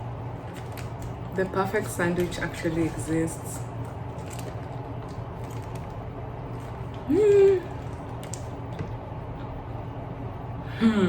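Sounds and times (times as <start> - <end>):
steady low hum: 0.0 - 11.0
woman humming while eating: 7.0 - 8.0, 10.6 - 11.0.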